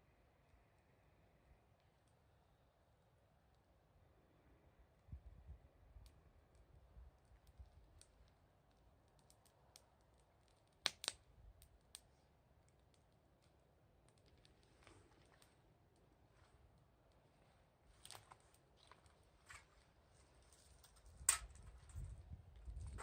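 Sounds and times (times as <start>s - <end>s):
sharp snaps of fire: 4.8s - 18.8s, 20.7s - 23.0s
wood fire crackling: 4.8s - 23.0s.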